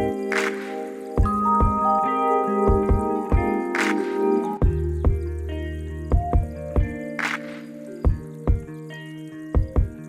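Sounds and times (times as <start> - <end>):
bell-like notes: 1.1 - 7.2.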